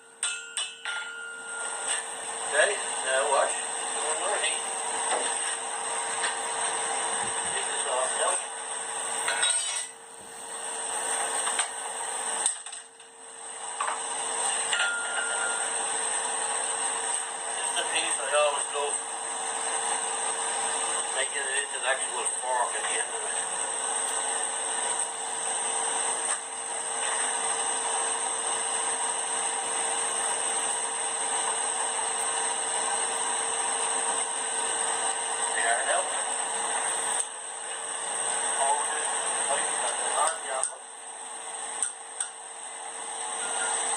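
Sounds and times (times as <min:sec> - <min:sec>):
machine whirring with high whine: 0:00.0 - 0:43.9.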